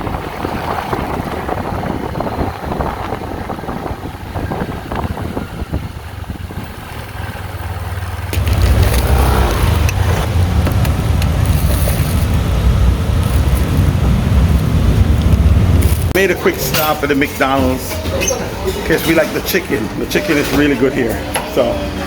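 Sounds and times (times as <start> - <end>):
wind buffeting microphone: 0.0 - 16.2
road vehicle rumble: 0.0 - 22.0.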